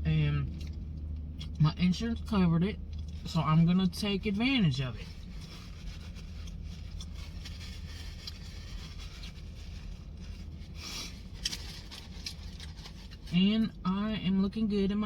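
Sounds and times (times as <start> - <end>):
steady low hum: 0.0 - 15.0
rustling and scraping: 4.8 - 13.4.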